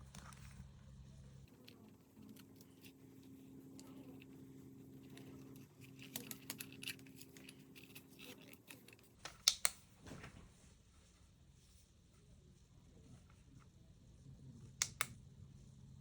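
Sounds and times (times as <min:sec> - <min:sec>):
packaging clicks and taps: 0:05.1 - 0:09.8.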